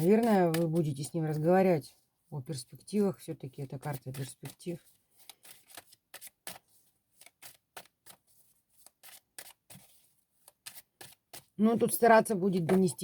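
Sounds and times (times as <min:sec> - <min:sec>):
cards clicking and snapping: 0:05.2 - 0:06.6, 0:07.2 - 0:08.2, 0:08.8 - 0:11.5.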